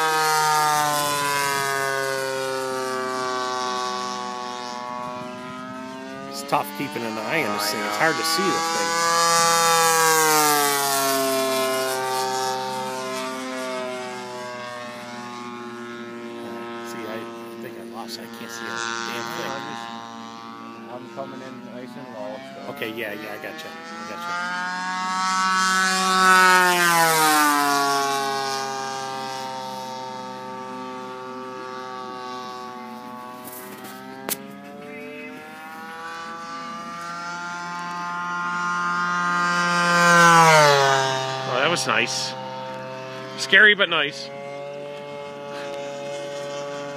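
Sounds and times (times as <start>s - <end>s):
model plane engine in flight: 0.0s - 46.9s.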